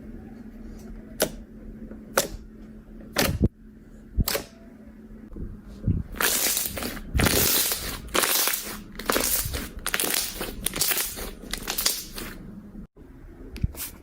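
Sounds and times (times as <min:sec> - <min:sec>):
slime crackling and popping: 0:06.2 - 0:12.4.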